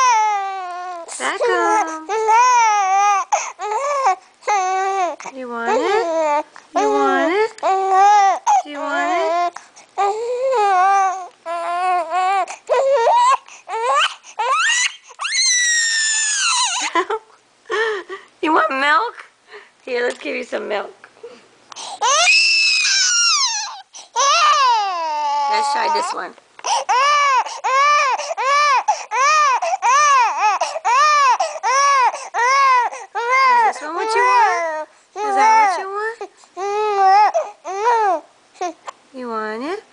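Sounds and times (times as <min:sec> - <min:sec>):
baby crying: 0:00.0 - 0:17.0, 0:21.8 - 0:39.0
baby high squeal: 0:12.7 - 0:17.0, 0:22.0 - 0:26.2.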